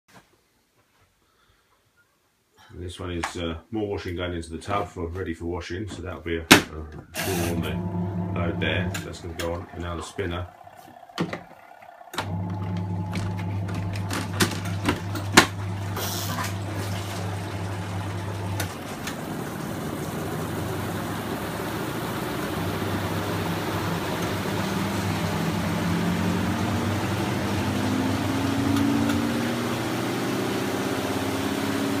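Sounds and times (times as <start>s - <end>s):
spinner drum whine rising: 7.2s - 31.3s
washing machine motor hum: 7.2s - 32.0s
sloshing rushing water: 7.5s - 31.8s.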